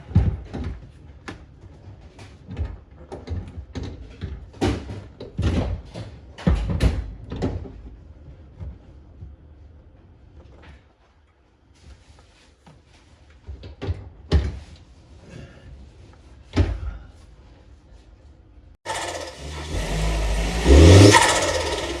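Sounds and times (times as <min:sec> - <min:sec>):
car engine revving: 0:18.9 - 0:22.0.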